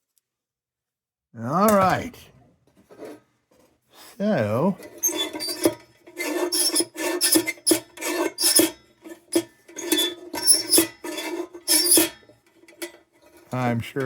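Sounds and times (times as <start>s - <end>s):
metal rasping on tinplate: 2.8s - 3.2s, 4.3s - 14.0s.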